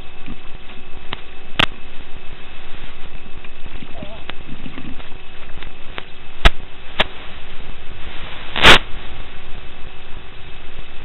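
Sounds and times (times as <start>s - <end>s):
static hiss: 0.0s - 11.0s
loud crackling burst: 4.5s - 10.2s.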